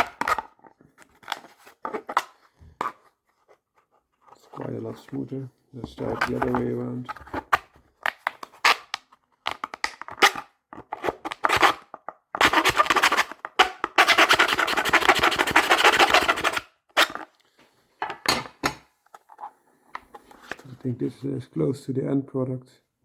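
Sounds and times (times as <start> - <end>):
hand file rasping: 14.0 - 16.6.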